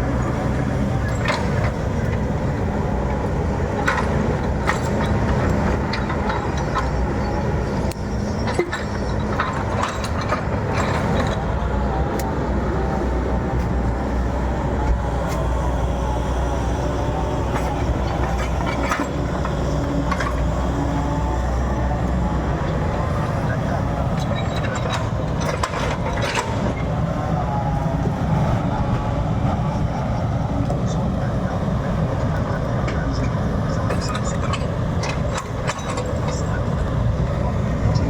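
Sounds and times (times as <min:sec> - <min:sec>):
diesel machinery running: 0:00.0 - 0:38.0.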